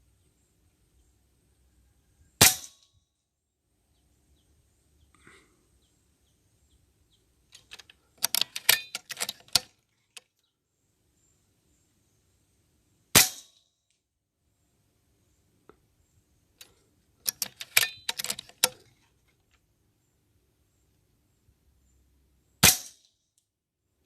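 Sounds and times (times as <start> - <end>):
air rifle shots: 2.4 - 2.8, 13.2 - 13.6, 22.6 - 23.0
mechanical clicks and rattles: 7.5 - 10.3, 16.6 - 18.9.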